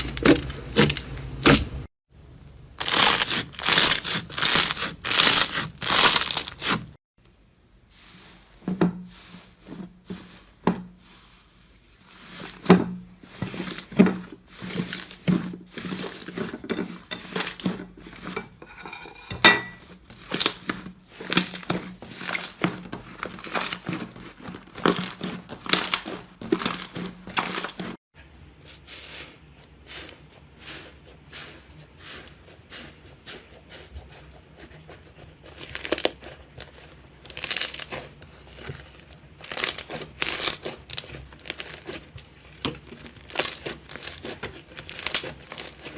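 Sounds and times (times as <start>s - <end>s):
slime crackling and popping: 2.8s - 6.8s, 35.6s - 45.9s.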